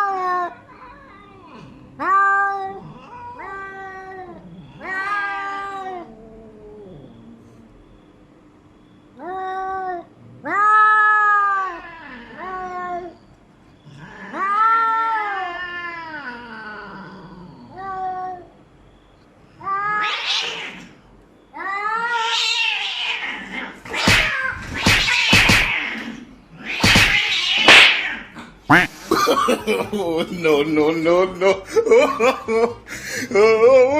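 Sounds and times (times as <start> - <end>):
cats yowling: 0.0 - 7.9, 9.1 - 13.2, 13.8 - 18.6, 19.5 - 28.5
sharp cracks: 23.9 - 25.9, 26.8 - 28.2.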